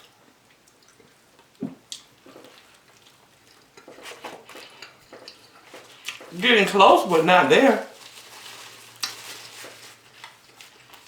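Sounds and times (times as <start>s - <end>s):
person chewing food: 0.1s - 6.3s.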